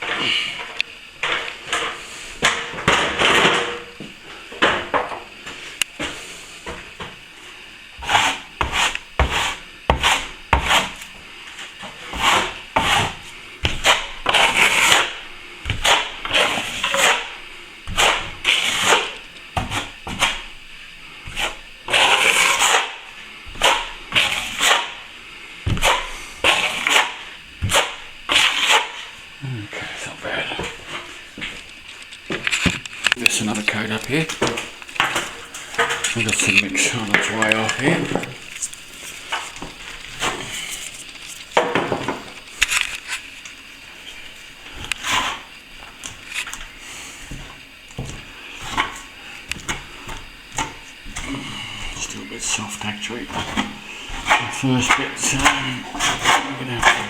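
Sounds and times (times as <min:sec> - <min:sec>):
plastering tool scraping plaster: 0:08.0 - 0:20.6, 0:21.2 - 0:25.1, 0:25.7 - 0:29.2, 0:32.3 - 0:57.0.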